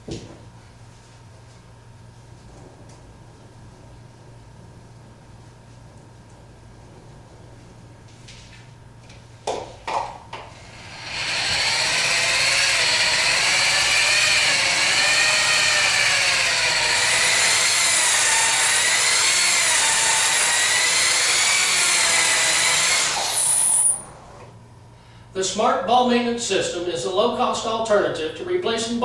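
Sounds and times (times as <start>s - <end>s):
power drill spinning polishing cup: 10.5s - 24.4s.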